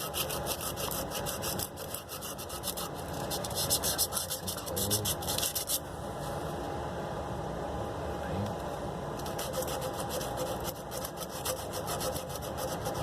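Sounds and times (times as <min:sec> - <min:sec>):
sandpaper rubbing on metal pipe: 0:00.0 - 0:05.8, 0:09.2 - 0:13.0.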